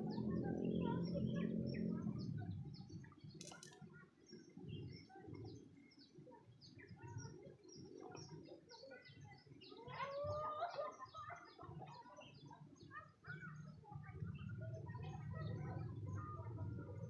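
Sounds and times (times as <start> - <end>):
small birds chirping: 0.0 - 17.0
sharp click: 3.4 - 3.8.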